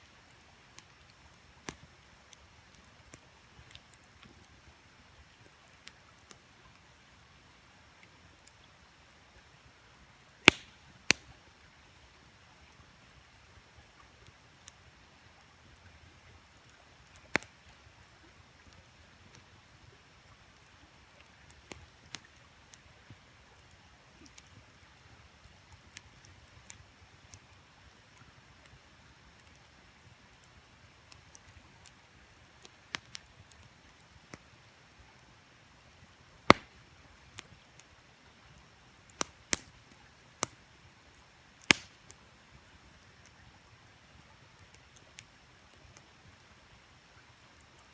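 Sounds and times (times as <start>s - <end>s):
campfire crackling: 0.0s - 47.9s
faint steady hiss: 0.0s - 47.9s
sharp fire pops: 10.4s - 11.3s, 36.5s - 36.8s, 39.2s - 39.8s, 41.6s - 42.0s.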